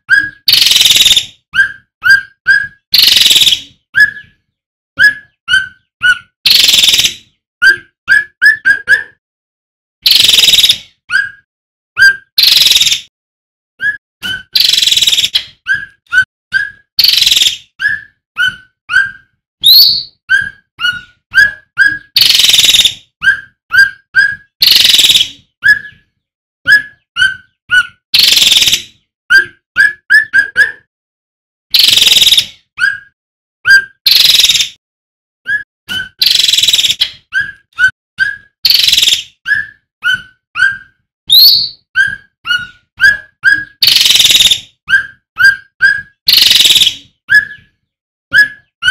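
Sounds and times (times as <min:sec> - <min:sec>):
bird singing whistled notes: 0:00.0 - 0:08.8, 0:10.0 - 0:13.1, 0:13.8 - 0:30.5, 0:35.5 - 0:48.9
harsh bird calls: 0:14.2 - 0:26.1, 0:38.2 - 0:48.9.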